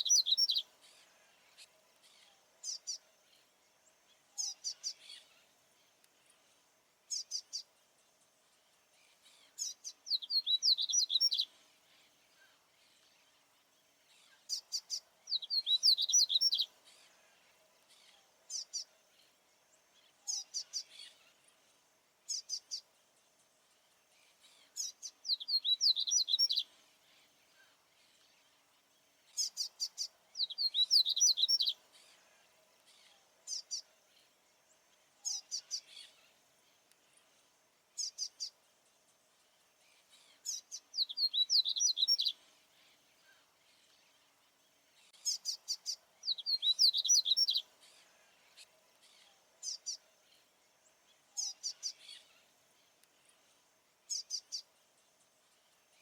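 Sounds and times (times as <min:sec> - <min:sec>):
seedeater bird singing: 0:00.0 - 0:00.7, 0:09.4 - 0:11.5, 0:14.3 - 0:16.7, 0:24.6 - 0:26.7, 0:29.3 - 0:31.8, 0:40.2 - 0:42.4, 0:45.1 - 0:48.0
faint steady hum: 0:00.0 - 0:56.0.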